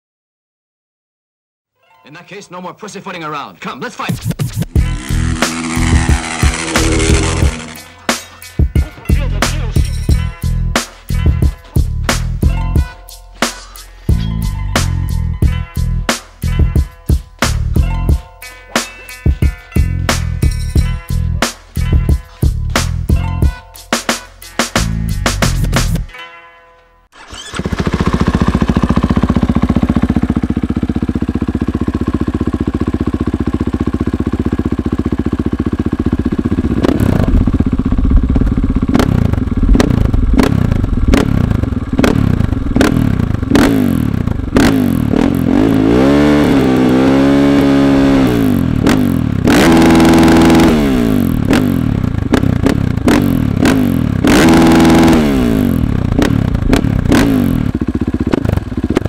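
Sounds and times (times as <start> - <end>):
motorcycle engine revving: 4.2 - 10.2, 27.2 - 59.0.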